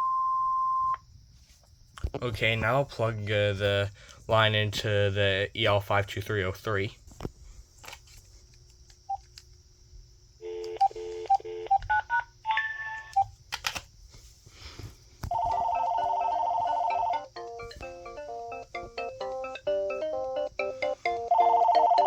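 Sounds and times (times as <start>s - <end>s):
phone melodic ringtone: 15.3s - 22.0s
warbling ring tone: 20.6s - 22.0s.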